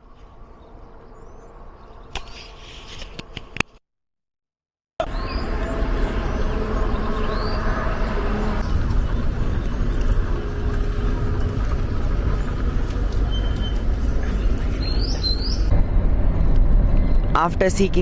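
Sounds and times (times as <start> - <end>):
highway traffic rumble: 0.0 - 3.6, 5.0 - 18.0
bird chirping: 5.0 - 15.7.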